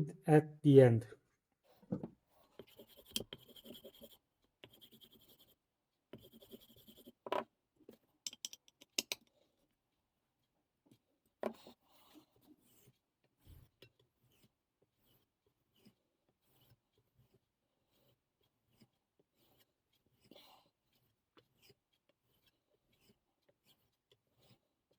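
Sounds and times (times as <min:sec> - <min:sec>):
light scratching and rubbing: 0:01.6 - 0:05.5.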